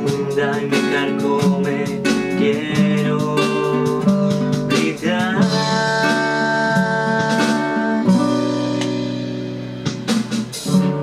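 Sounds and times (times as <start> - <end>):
person singing: 0.0 - 8.8
held instrumental chords: 0.0 - 11.0.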